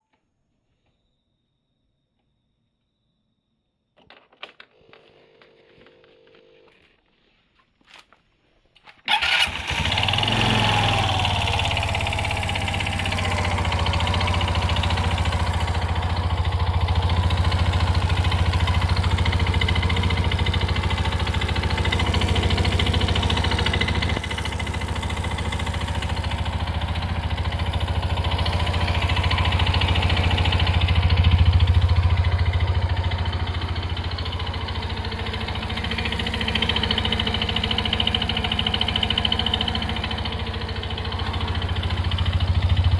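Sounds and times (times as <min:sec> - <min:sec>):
scooter engine starting and idling: 0:08.9 - 0:42.9
abnormal engine noise: 0:09.1 - 0:42.9.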